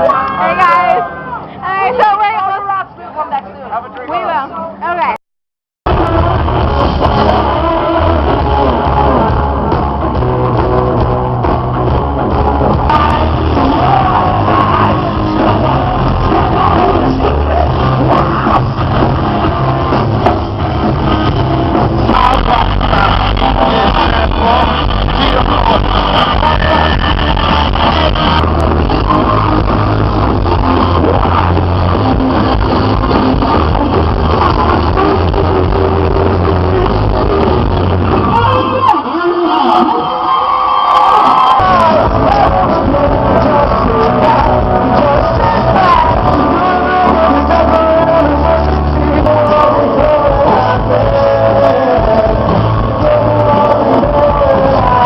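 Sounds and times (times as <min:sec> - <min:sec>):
loud music with heavy bass: 0:05.8 - 0:55.0
rock song with singing: 0:05.9 - 0:55.0.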